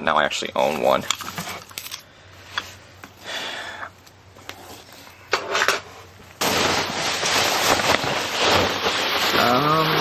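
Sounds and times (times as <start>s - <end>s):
packing material rustling: 6.4s - 10.0s.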